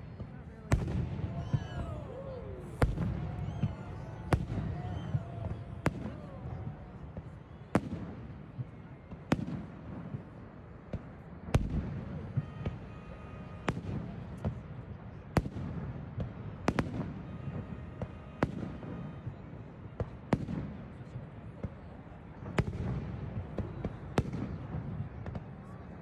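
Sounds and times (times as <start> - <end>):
fireworks bangs: 0.0 - 14.7, 15.3 - 21.1
firework pops and crackles: 15.3 - 25.6.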